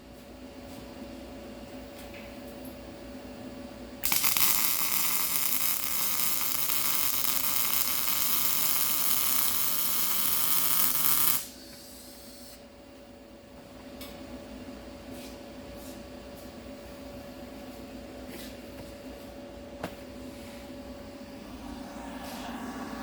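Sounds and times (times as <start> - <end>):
welder sizzling: 4.0 - 11.5.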